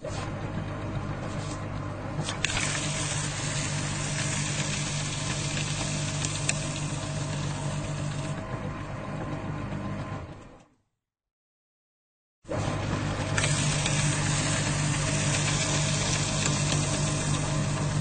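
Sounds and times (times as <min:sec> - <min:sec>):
shredder motor hum: 0:00.0 - 0:10.8, 0:12.5 - 0:18.0
paper being shredded: 0:02.2 - 0:08.4, 0:12.6 - 0:18.0.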